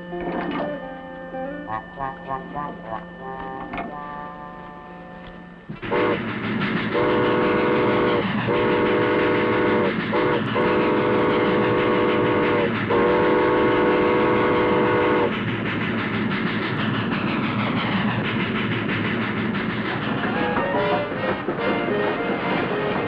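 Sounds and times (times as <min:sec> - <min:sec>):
steam train rumbling: 0:00.0 - 0:23.0
train chime whistle blasts: 0:01.6 - 0:06.2, 0:07.0 - 0:15.3.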